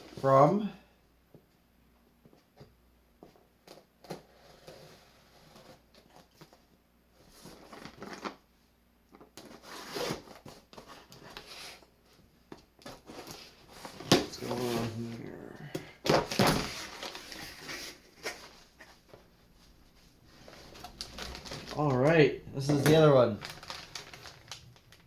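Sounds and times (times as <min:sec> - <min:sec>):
packaging rustling and tearing: 0:07.3 - 0:08.4, 0:12.8 - 0:15.2, 0:16.0 - 0:19.2, 0:20.3 - 0:25.0.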